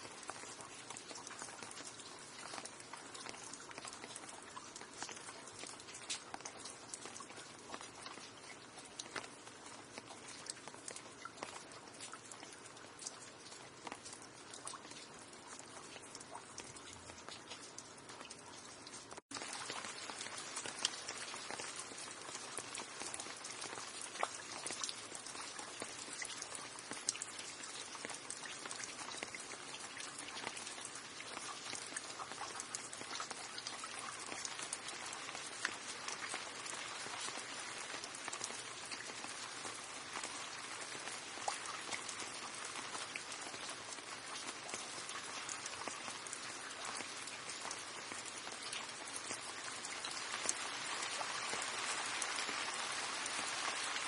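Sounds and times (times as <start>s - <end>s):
drips on hard surface: 0.0s - 54.0s
steady rain hiss: 0.0s - 54.0s.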